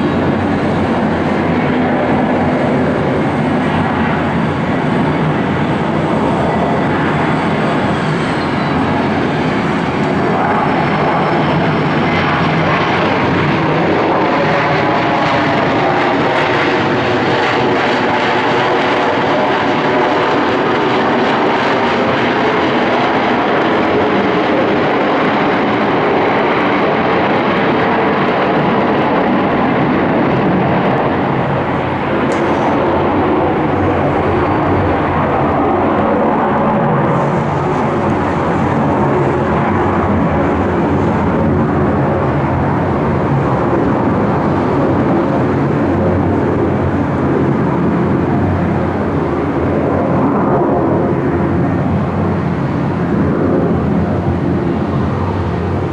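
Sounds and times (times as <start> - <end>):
faint gliding whine: 0.0 - 14.4, 29.4 - 55.9
jet engines running: 0.0 - 55.9.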